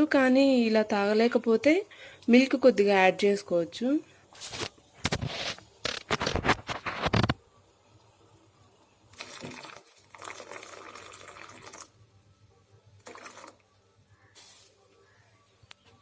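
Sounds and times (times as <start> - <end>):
milk pouring into pot: 9.1 - 12.0, 13.0 - 13.7.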